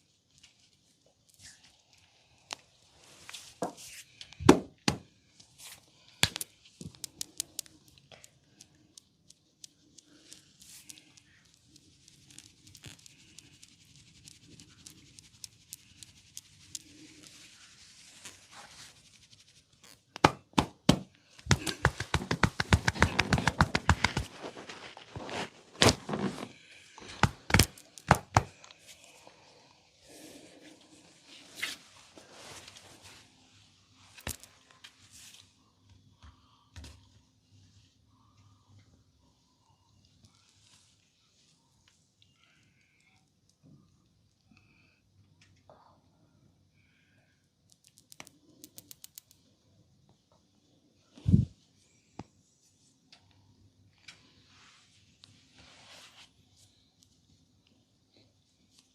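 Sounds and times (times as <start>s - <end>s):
hands rubbing hair and skin: 9.4s - 20.1s, 21.4s - 29.1s, 54.5s - 56.3s.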